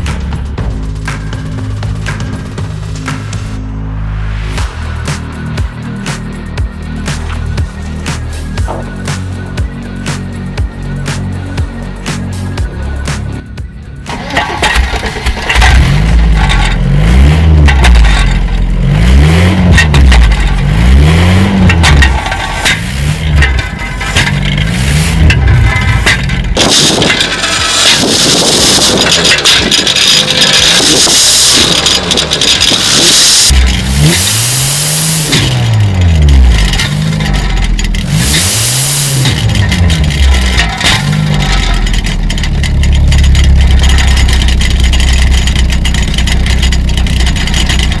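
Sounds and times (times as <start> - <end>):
car engine running: 0.0 - 48.0
can rattling in car exhaust: 14.1 - 18.8, 19.4 - 48.0.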